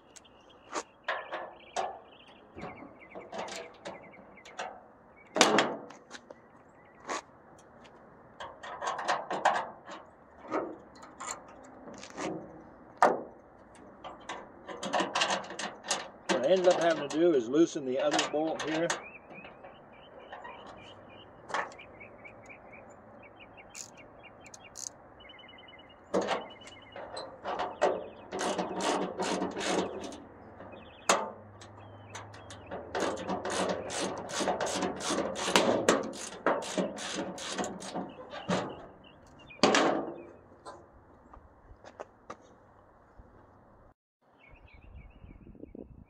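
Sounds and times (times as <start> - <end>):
socket ratchet clicking: 23.8 - 24.9.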